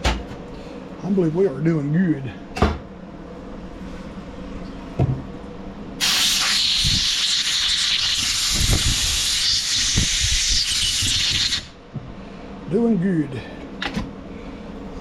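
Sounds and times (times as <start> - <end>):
loud hiss of pressurized spray: 6.0 - 11.8.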